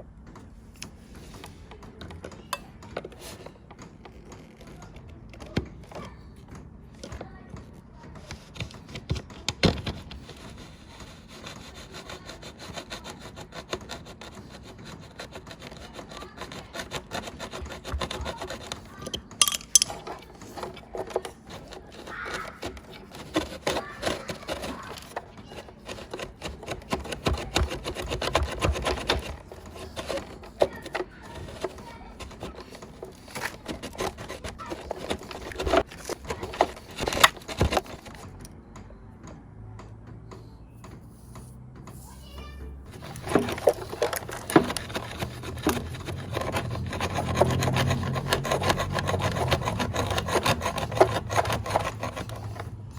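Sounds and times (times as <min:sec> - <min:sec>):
hand scraping and scrubbing: 0:09.8 - 0:38.4, 0:40.8 - 0:52.9.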